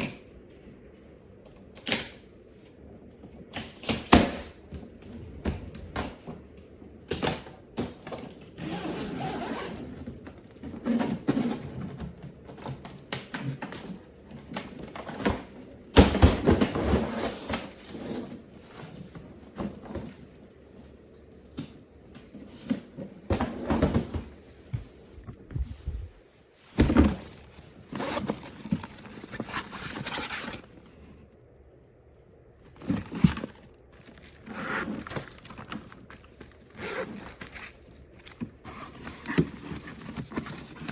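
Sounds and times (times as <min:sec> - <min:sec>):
suitcase handling knocks and scraping: 0:07.2 - 0:20.3, 0:22.3 - 0:31.1, 0:32.6 - 0:40.9.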